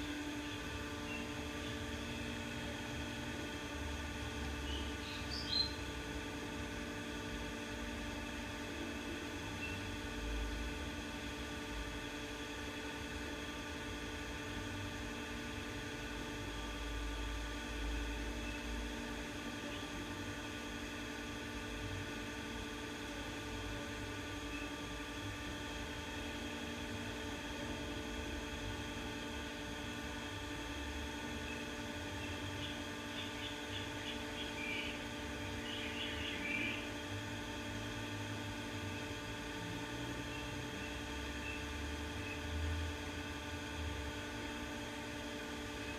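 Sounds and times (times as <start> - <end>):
ceiling fan motor humming: 0.0 - 45.9.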